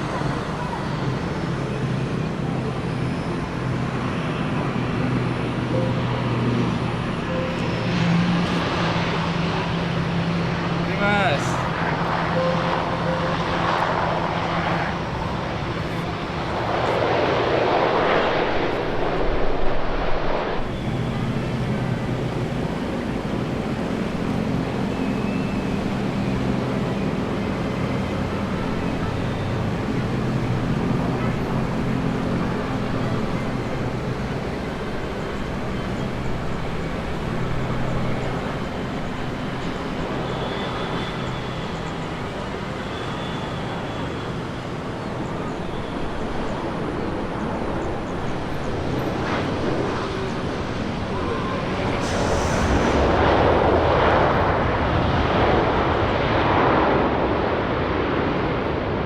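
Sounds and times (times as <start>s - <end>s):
jet engines rushing: 0.0s - 59.0s
low engine hum: 11.5s - 55.4s.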